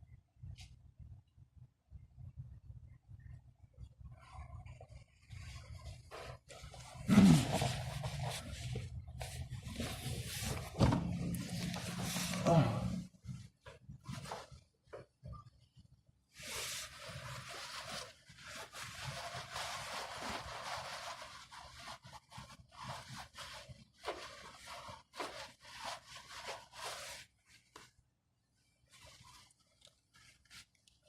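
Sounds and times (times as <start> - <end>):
rubbing and scraping: 4.1 - 15.1, 16.4 - 27.9.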